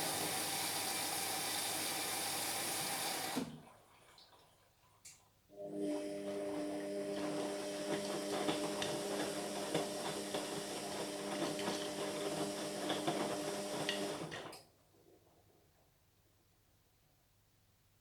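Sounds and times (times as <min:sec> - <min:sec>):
washing machine motor hum: 0:00.0 - 0:03.6, 0:05.6 - 0:14.5.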